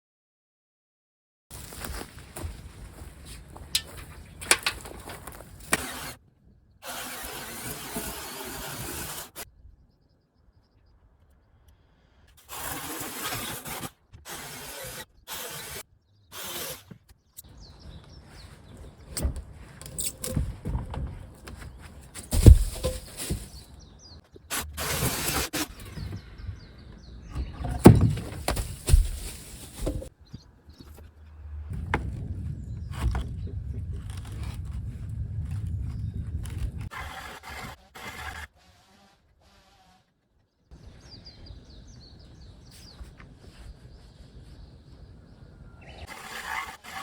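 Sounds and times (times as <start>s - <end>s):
scraping and knocking on wood: 19.0s - 23.7s, 27.4s - 30.1s
loud heavy thuds: 22.2s - 23.6s, 27.6s - 30.1s.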